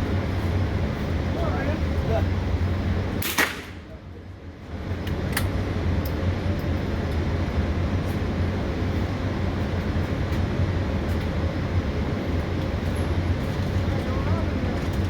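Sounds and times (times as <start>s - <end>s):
ventilation hum: 0.0s - 15.0s
distant gunshots: 3.2s - 3.8s
loud gunshot: 3.2s - 3.8s.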